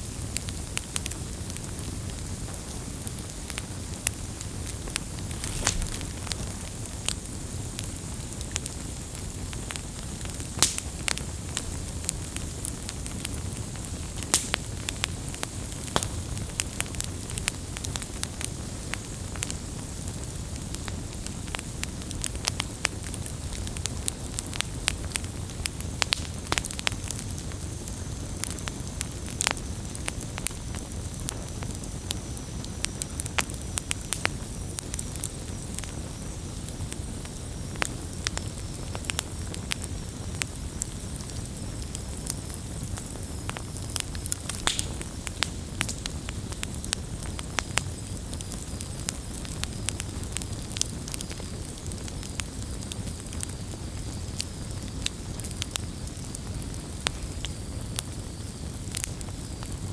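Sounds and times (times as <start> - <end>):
campfire crackling and popping: 0.0 - 59.9
low noise of flames: 0.0 - 59.9
faint high hiss: 4.3 - 7.6.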